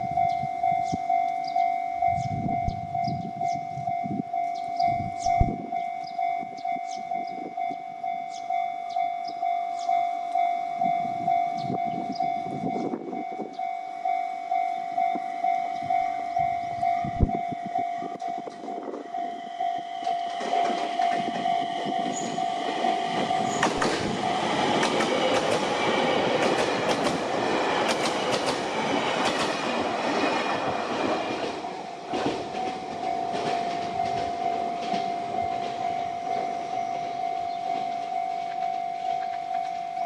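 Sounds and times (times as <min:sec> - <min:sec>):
level-crossing alarm tone: 0:00.0 - 0:40.0
train wheels clacking: 0:19.7 - 0:39.9.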